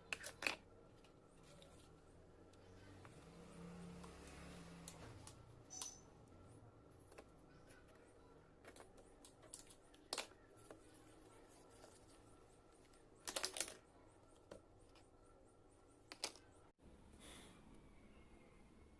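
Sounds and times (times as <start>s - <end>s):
plastic toy pieces clicking: 0.0s - 0.7s, 13.2s - 13.8s, 16.1s - 16.5s.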